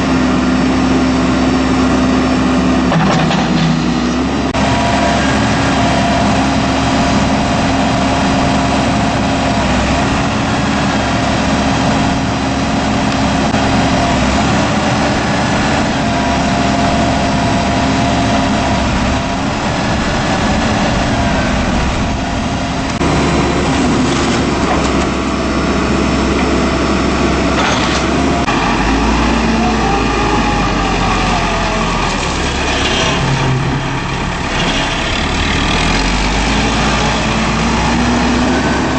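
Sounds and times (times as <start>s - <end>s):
diesel engine running: 0.0s - 38.9s
whining tone: 4.2s - 35.0s.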